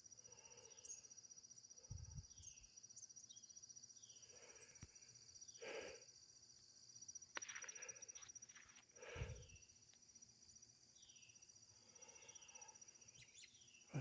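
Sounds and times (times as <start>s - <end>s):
crickets trilling: 0.0s - 14.0s
bird chirps: 11.0s - 14.0s.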